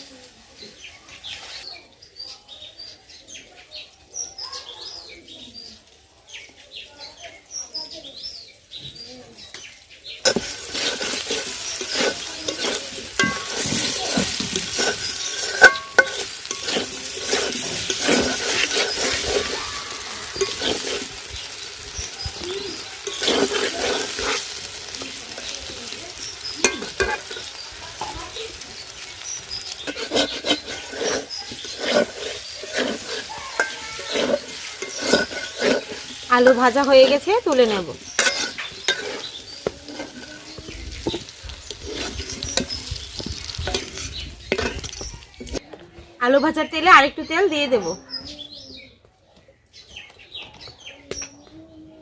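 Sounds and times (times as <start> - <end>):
potatoes sizzling in oil: 0.0 - 45.6
spatula scraping pan: 10.2 - 45.6.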